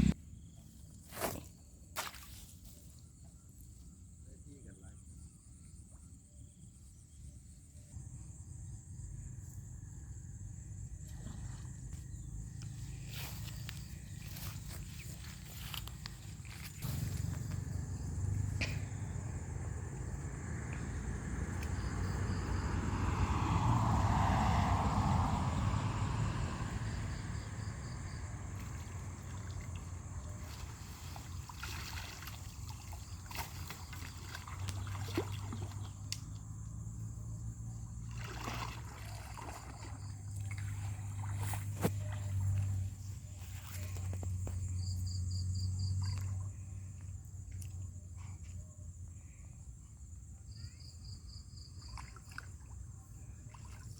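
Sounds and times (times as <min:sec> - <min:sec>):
insect drone with chirps: 0:00.0 - 0:53.9
water trickling and splashing: 0:10.9 - 0:27.4, 0:28.0 - 0:44.6, 0:51.6 - 0:53.9.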